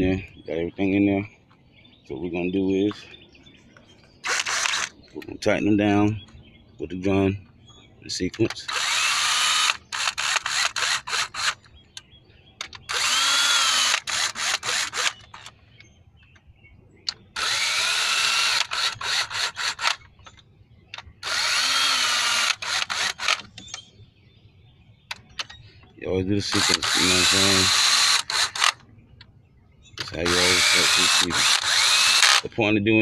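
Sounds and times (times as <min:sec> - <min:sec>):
power drill motor whine: 0:04.2 - 0:04.9, 0:08.7 - 0:11.6, 0:12.9 - 0:15.4, 0:17.4 - 0:20.0, 0:21.2 - 0:23.4, 0:26.5 - 0:28.8, 0:30.2 - 0:32.4
power drill trigger blips: 0:04.2 - 0:04.9, 0:08.4 - 0:11.6, 0:12.6 - 0:15.5, 0:17.4 - 0:20.0, 0:21.2 - 0:23.8, 0:26.5 - 0:28.8, 0:30.0 - 0:32.5.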